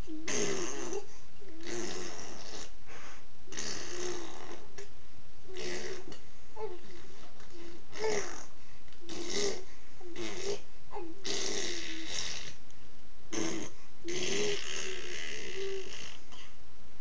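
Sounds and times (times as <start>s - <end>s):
baby blowing raspberries: 0.2s - 4.7s, 5.5s - 8.5s, 9.1s - 10.6s, 11.2s - 12.6s, 13.3s - 16.4s.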